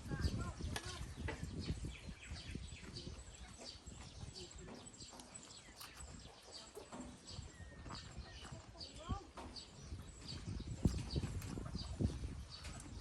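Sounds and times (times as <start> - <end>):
small birds chirping: 0.0 - 13.0
wind rumble on microphone: 0.0 - 13.0.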